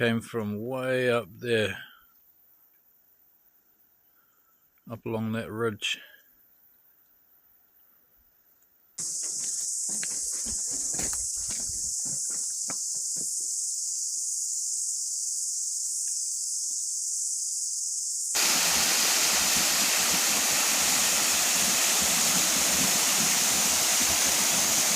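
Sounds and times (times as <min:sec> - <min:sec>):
high-pitched insect chorus: 0:09.0 - 0:24.9
flowing water rushing: 0:18.4 - 0:24.9.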